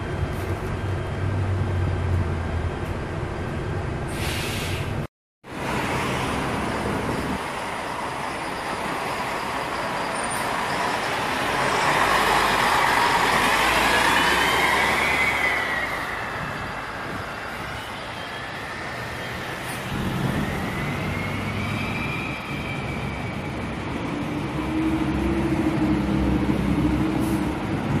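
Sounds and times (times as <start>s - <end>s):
turbocharger whistle: 18.5s - 23.8s.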